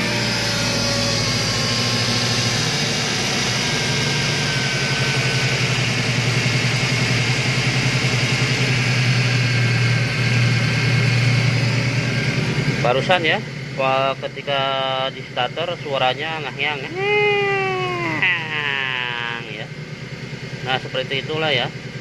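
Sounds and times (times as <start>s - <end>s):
humming whine: 0.0s - 21.2s
engine idling: 0.0s - 22.0s.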